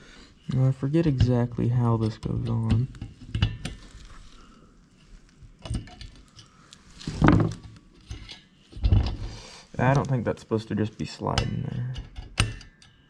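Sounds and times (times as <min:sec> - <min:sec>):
metallic clicks and clinks: 0:11.3 - 0:13.0.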